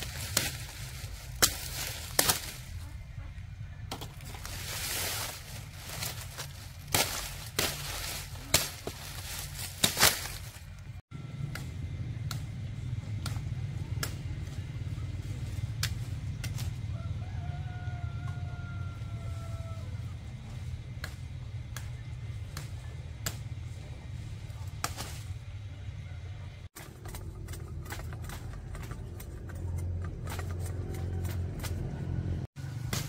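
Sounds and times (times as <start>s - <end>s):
steady low rumble: 0.0s - 17.2s.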